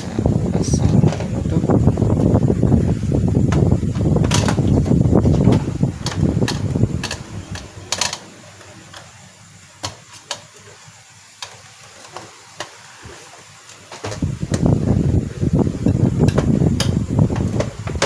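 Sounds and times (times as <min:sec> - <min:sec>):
low rumble: 0:00.0 - 0:07.8
plastic parts clicking: 0:03.5 - 0:09.2, 0:09.8 - 0:12.8.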